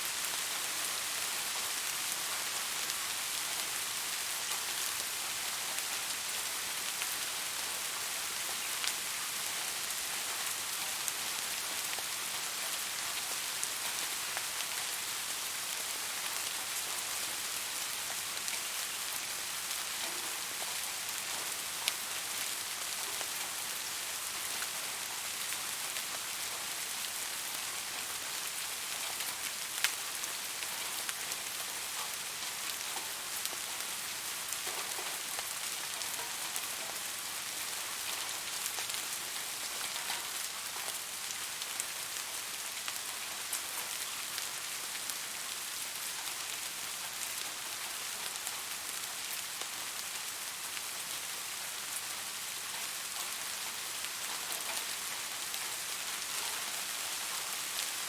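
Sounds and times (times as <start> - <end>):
steady rain hiss: 0.0 - 58.0
raindrops ticking close by: 0.2 - 58.0.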